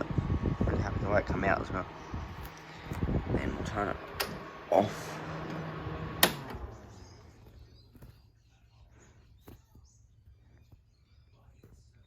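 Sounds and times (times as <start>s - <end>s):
fan blades spinning down: 0.0s - 7.6s
box fan humming: 0.0s - 11.0s
fan switch click: 4.1s - 4.4s, 6.2s - 6.7s.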